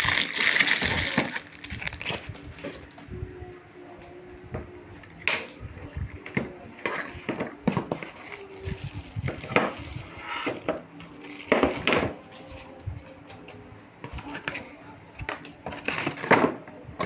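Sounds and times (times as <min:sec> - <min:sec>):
hard objects clattering: 0:00.0 - 0:03.0.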